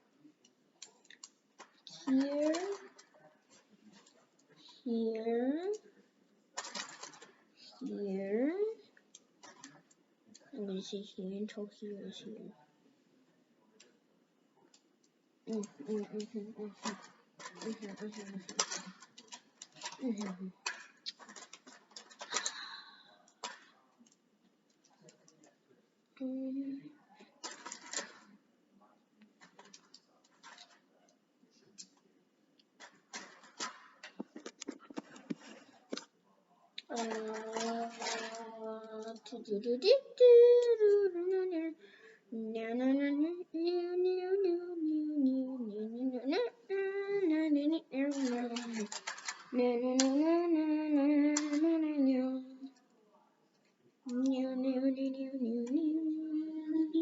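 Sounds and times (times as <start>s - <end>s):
plastic bricks clicking and rattling: 1.1s - 3.1s, 6.6s - 7.3s, 15.5s - 23.8s, 27.4s - 28.3s, 32.8s - 36.0s, 36.9s - 39.2s, 48.0s - 50.4s, 51.0s - 51.8s
person singing: 36.9s - 52.7s, 54.1s - 57.0s.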